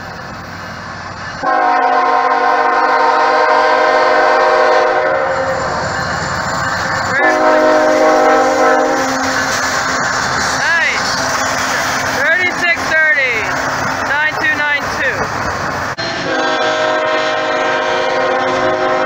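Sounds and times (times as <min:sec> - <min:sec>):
train running: 0:00.0 - 0:19.0
locomotive air horn chord: 0:01.4 - 0:05.4, 0:07.2 - 0:09.4, 0:16.0 - 0:19.0.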